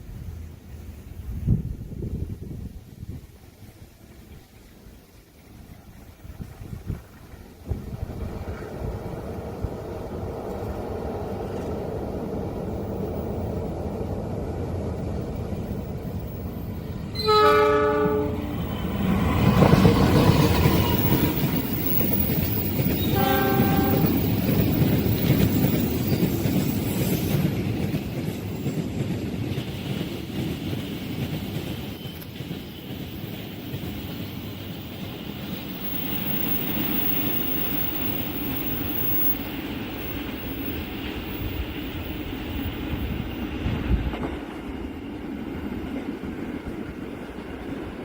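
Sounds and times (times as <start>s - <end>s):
train rumbling past: 0.0s - 48.0s
train horn blast: 17.1s - 18.5s, 23.0s - 24.2s
wheels clickety-clack: 18.5s - 48.0s.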